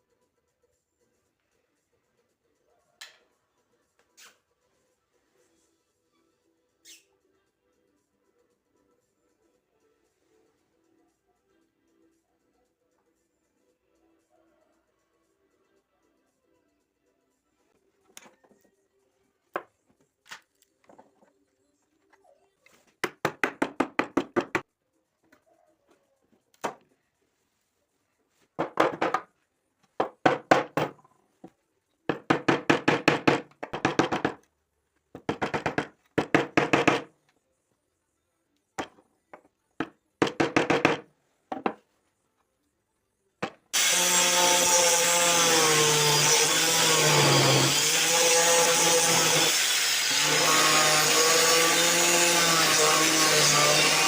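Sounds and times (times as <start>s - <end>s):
sawing strokes on wood: 43.7s - 54.0s
electric power tool running: 43.8s - 54.0s.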